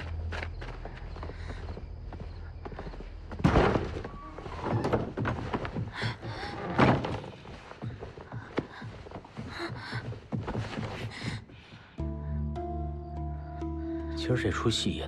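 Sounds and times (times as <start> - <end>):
faint background music: 8.0 - 15.0.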